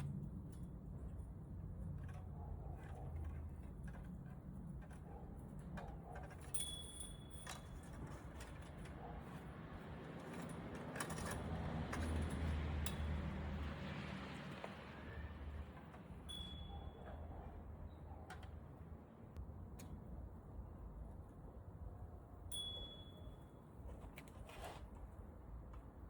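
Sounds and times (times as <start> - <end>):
light metallic clinks and knocks: 0.0 - 13.8, 14.4 - 18.9, 22.5 - 24.3.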